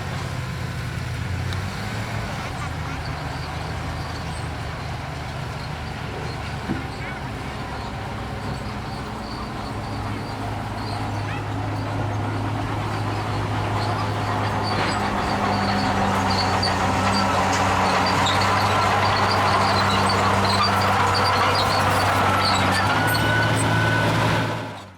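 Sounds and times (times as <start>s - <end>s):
heavy diesel engine running: 0.0s - 24.9s
faint high squeaks: 6.2s - 24.5s.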